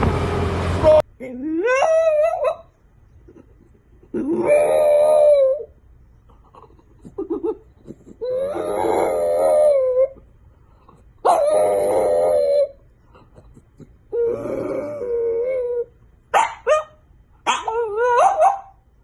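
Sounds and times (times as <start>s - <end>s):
dog whining and yipping: 1.6s - 2.8s, 4.1s - 5.7s, 7.1s - 10.3s, 11.2s - 12.8s, 14.1s - 18.8s
dog howling: 4.2s - 5.7s, 8.2s - 10.2s, 11.2s - 12.8s, 14.1s - 15.9s, 17.5s - 18.8s.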